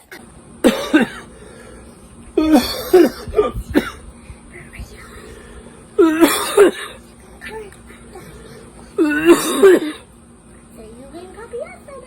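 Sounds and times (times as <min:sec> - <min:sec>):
man coughing hard: 0:00.6 - 0:01.3, 0:02.4 - 0:04.1, 0:06.0 - 0:07.0, 0:09.0 - 0:10.1.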